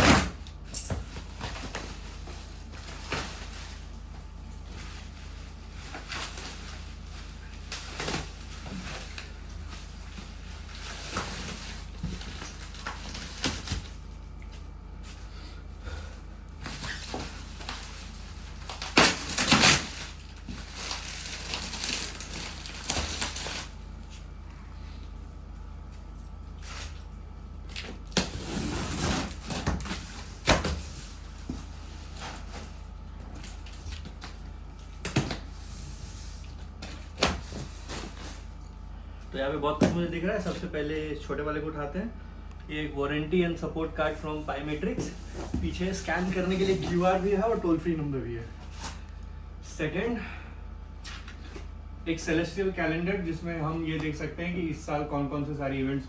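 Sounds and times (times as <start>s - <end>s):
steady low hum: 0.0s - 56.0s
cardboard box packaging rustling: 16.6s - 23.8s.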